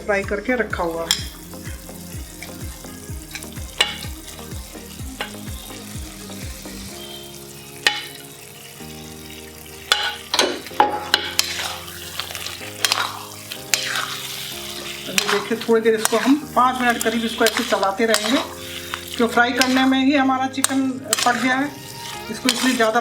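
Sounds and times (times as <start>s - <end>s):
frying sizzle: 0.0s - 23.0s
spoon scraping and clinking on pan: 1.1s - 1.4s, 3.3s - 4.1s, 7.8s - 8.3s, 9.9s - 20.0s, 20.6s - 23.0s.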